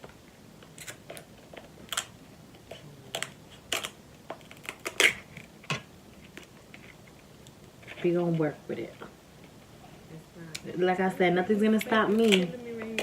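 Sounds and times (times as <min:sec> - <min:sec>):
crab shells cracking: 0:00.6 - 0:02.2, 0:03.1 - 0:07.6.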